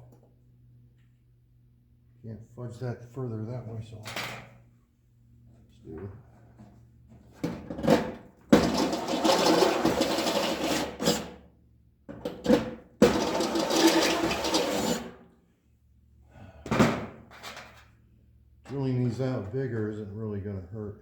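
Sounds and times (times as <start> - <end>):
power drill drilling sheet metal: 8.6 - 11.3, 13.0 - 15.1.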